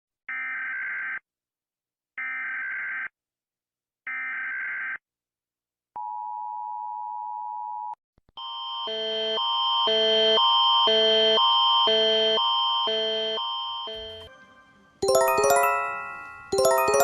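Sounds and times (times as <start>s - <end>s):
alarm with alternating tones: 8.4s - 14.3s
dual-tone attention signal: 13.9s - 14.3s.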